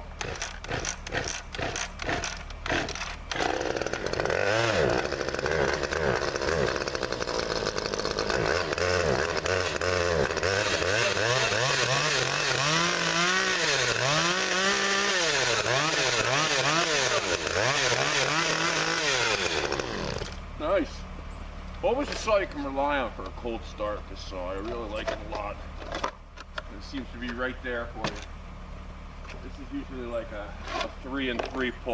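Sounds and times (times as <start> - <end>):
chainsaw revving: 0.0 - 20.4.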